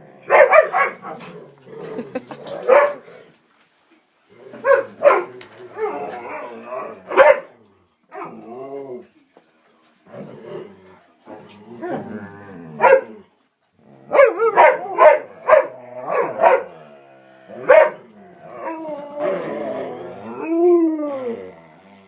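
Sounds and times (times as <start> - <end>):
dogs barking: 0.3 - 1.2, 2.6 - 3.0, 4.6 - 6.0, 7.1 - 7.5, 12.8 - 13.1, 14.1 - 16.8, 17.6 - 18.1
dog howling: 17.6 - 21.7.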